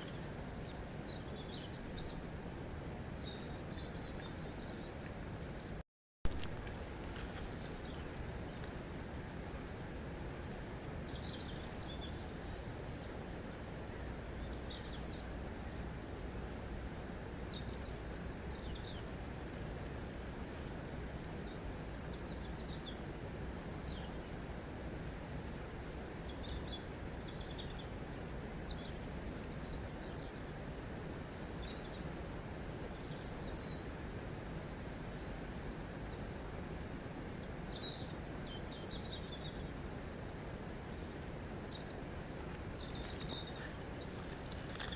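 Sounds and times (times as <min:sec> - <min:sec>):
small birds chirping: 0:37.1 - 0:44.9.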